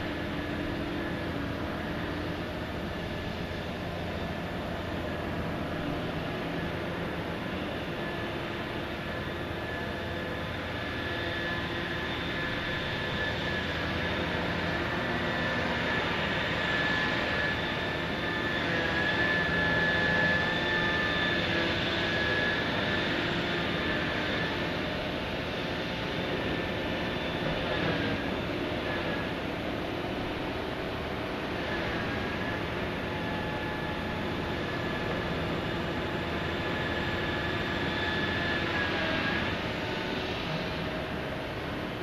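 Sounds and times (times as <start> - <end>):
excavator machinery running: 0.0 - 15.7
high hydraulic whine: 0.0 - 42.0.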